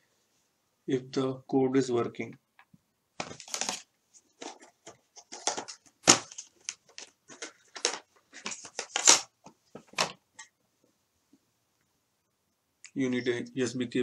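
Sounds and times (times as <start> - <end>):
small objects rustling and clattering: 3.2 - 10.5.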